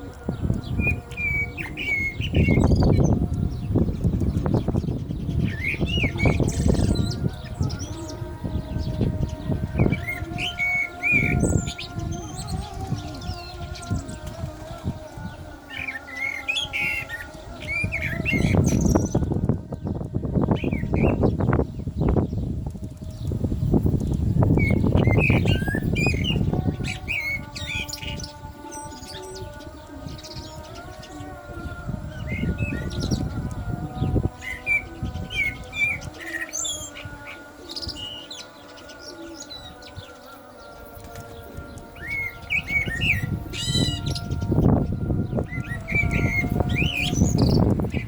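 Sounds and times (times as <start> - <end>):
blackbird singing: 0.0 - 48.0
call to prayer: 0.0 - 48.0
songbird whistled chirps: 23.8 - 31.2.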